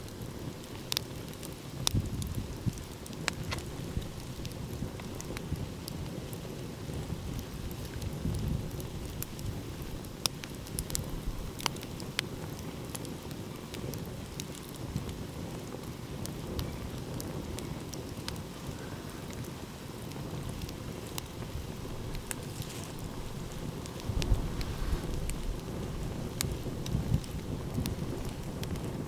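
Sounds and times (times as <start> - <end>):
wood fire crackling and popping: 0.0 - 29.0
ocean surf rumble: 22.9 - 26.7.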